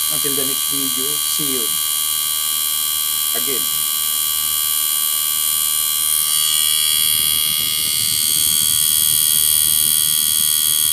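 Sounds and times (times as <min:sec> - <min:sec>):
electrical hum: 0:00.0 - 0:10.9
high-pitched whining tones: 0:05.9 - 0:10.9.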